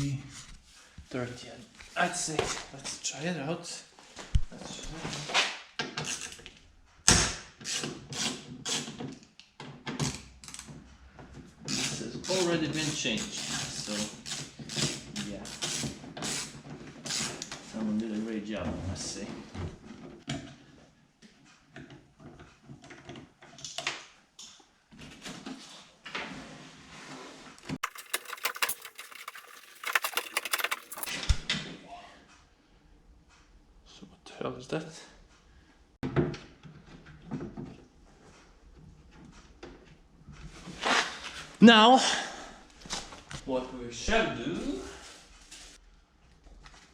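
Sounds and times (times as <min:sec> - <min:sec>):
ratchet strokes: 0:27.8 - 0:31.1
hand tools clicking and rattling: 0:27.8 - 0:31.2.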